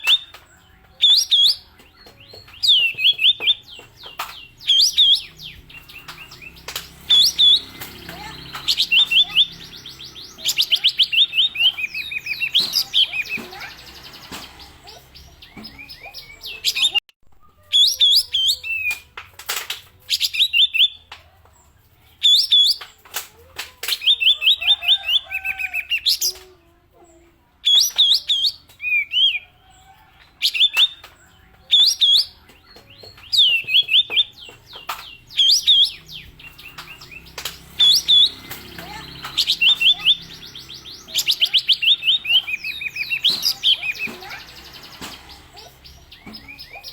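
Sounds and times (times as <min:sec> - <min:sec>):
songbird singing sharp notes: 0:30.4 - 0:46.9.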